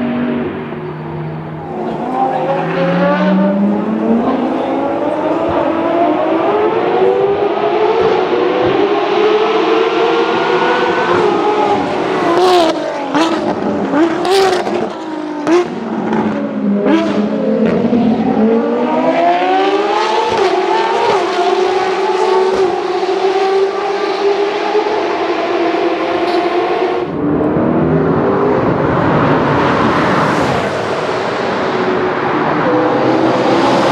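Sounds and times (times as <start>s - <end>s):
racing car engine revving: 0.0s - 33.9s.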